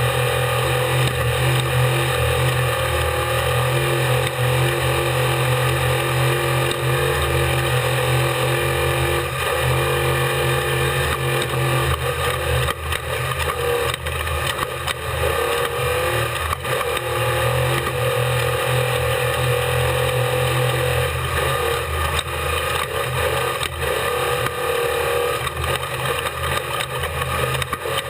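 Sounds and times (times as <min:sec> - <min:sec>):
vehicle engine running hard: 0:00.0 - 0:28.0
knocks and clatter from rough ground: 0:11.1 - 0:17.2, 0:25.4 - 0:28.0.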